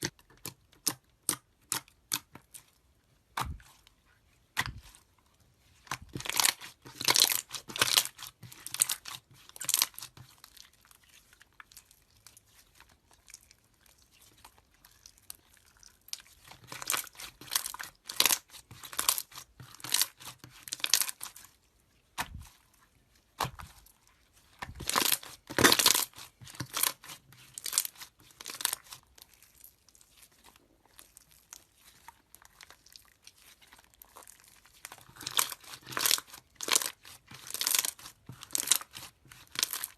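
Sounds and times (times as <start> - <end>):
slime crackling and popping: 0.0 - 2.6, 5.9 - 10.8, 13.2 - 21.4, 24.6 - 39.9.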